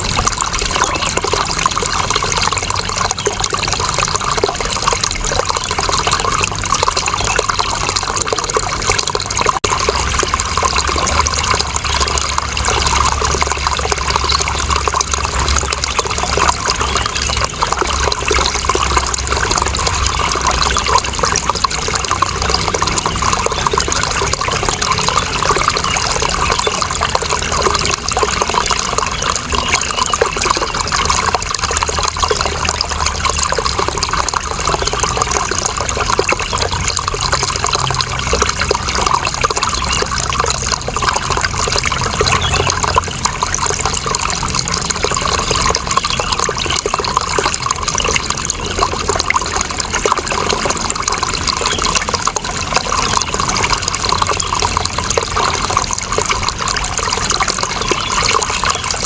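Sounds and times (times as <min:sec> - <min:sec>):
running water: 0:00.0 - 0:59.0.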